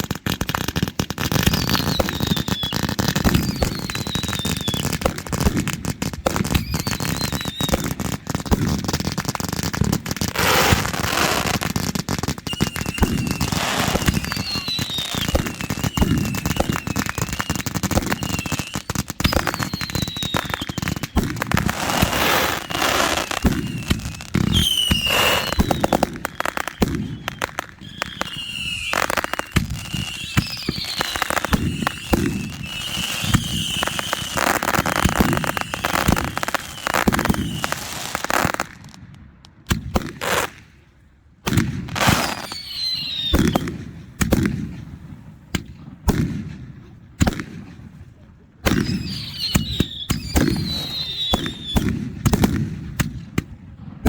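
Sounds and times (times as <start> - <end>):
fireworks banging and crackling: 0.0 - 54.0
whistling firework shrieks: 1.2 - 5.1, 6.3 - 8.4, 12.4 - 38.6, 41.9 - 43.7, 48.7 - 51.9.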